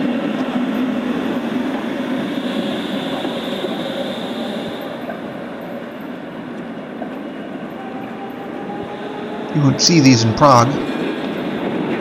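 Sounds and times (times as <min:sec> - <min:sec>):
tram rumbling along street track: 0:00.0 - 0:12.0.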